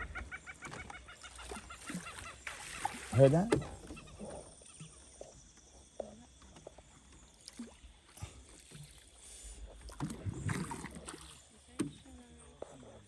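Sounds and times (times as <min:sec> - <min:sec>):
water lapping around raft: 0:00.0 - 0:13.0.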